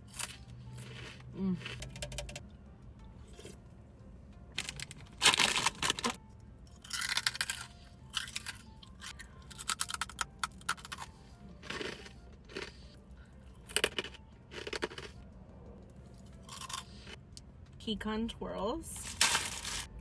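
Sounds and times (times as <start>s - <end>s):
snacks crackling and crunching: 0.0s - 2.4s, 4.6s - 15.3s, 15.9s - 17.2s.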